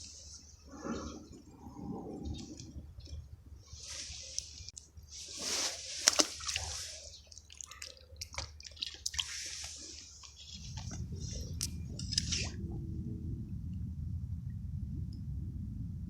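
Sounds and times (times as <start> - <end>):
wet splashing and squishing: 3.8 - 12.6
low rumble: 10.5 - 16.0.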